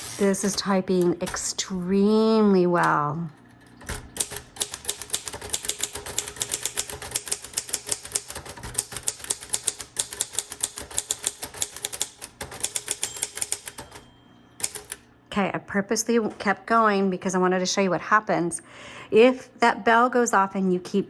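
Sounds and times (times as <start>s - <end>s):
typewriter typing: 0.0s - 3.1s, 3.8s - 15.0s
typewriter margin bell: 4.8s - 8.2s, 8.9s - 15.0s.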